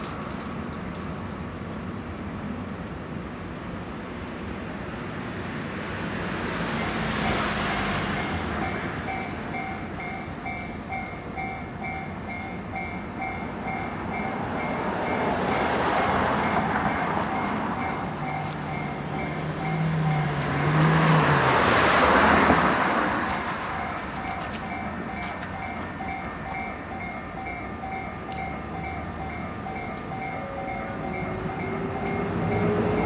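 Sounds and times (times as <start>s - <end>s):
trains passing: 0.0s - 33.0s
level crossing warning bell: 6.8s - 21.4s, 23.3s - 33.0s.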